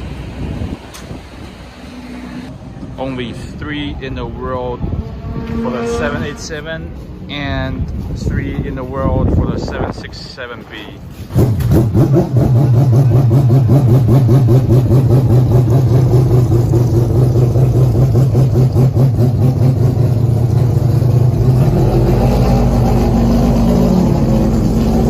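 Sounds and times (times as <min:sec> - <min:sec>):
racing engine running: 0:11.2 - 0:25.0.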